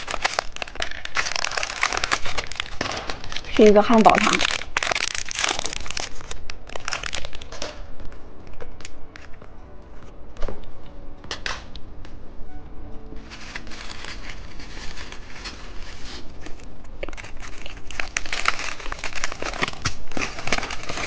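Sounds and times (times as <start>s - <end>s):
candy wrapper crinkling: 0.0s - 7.9s, 13.2s - 21.0s.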